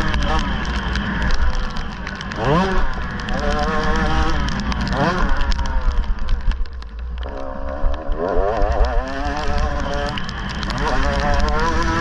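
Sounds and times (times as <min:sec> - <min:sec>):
low rumble: 0:00.0 - 0:11.8
dirt bike engine revving: 0:02.3 - 0:05.5, 0:07.4 - 0:12.0.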